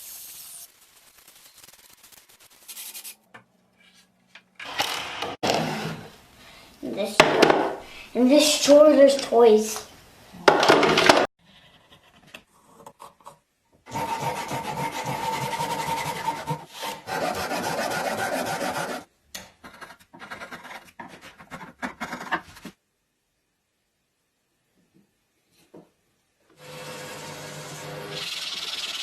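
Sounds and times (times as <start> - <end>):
tool scraping on wood: 4.7 - 6.2.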